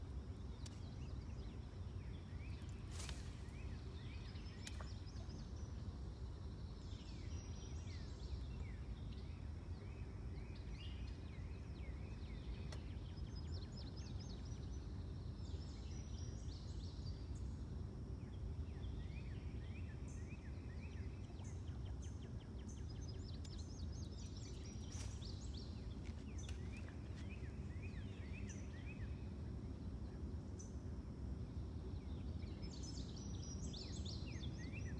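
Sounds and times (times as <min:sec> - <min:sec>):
small birds chirping: 0:00.3 - 0:05.9, 0:21.0 - 0:28.9.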